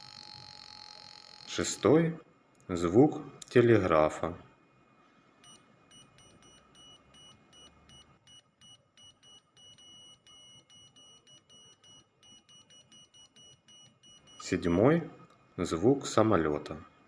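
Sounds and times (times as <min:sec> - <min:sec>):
piezo buzzer beeping: 0:00.0 - 0:01.8, 0:05.9 - 0:14.5.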